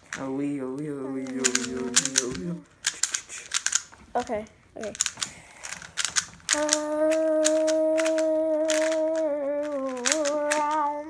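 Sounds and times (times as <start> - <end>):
puzzle cube clicking: 0.0 - 11.0
person humming a long note: 6.5 - 11.0.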